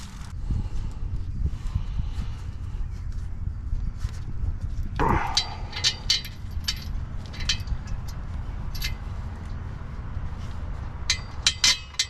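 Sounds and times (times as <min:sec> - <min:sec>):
low steady rumble: 0:00.0 - 0:12.0
metallic clicks and clinks of tools: 0:05.2 - 0:09.6, 0:11.0 - 0:12.0.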